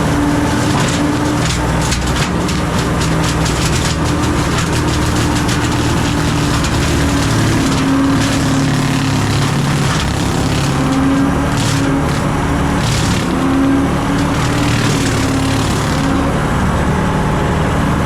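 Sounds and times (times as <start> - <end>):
diesel engine running under load: 0.0 - 18.0
brush being chopped: 3.9 - 13.5.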